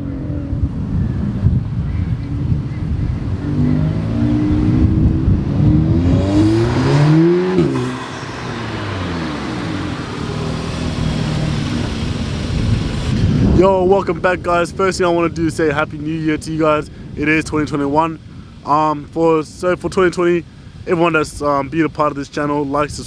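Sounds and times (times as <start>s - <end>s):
car engine accelerating: 0.0s - 13.6s.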